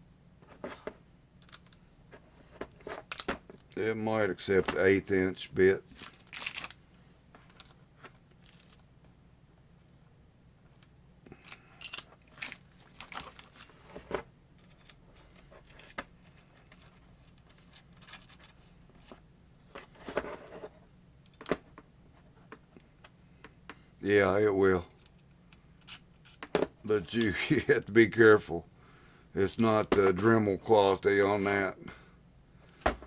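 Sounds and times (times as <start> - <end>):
faint hum: 0.0 - 33.0.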